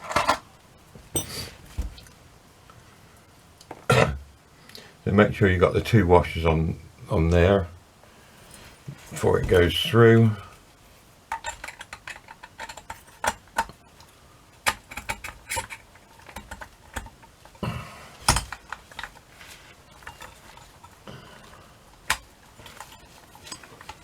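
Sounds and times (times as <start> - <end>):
small metal parts clicking: 11.3 - 13.8, 14.6 - 17.6.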